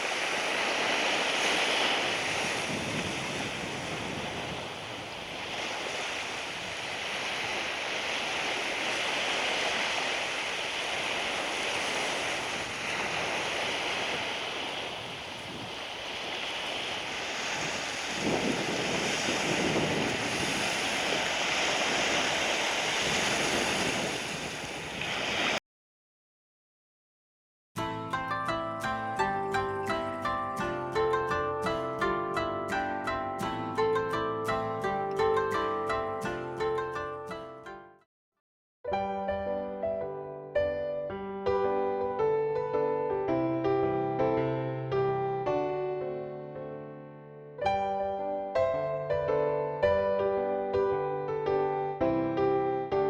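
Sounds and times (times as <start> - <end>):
surf breaking on a beach: 0.0 - 25.6, 27.8 - 37.7
wind buffeting microphone: 0.4 - 9.2, 11.6 - 25.4.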